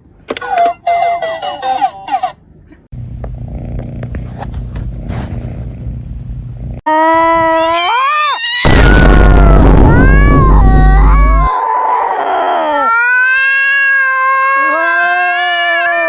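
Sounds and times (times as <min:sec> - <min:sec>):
cat purring: 0:03.2 - 0:06.8
cat meowing: 0:06.9 - 0:16.0
cat yowling: 0:06.9 - 0:16.0.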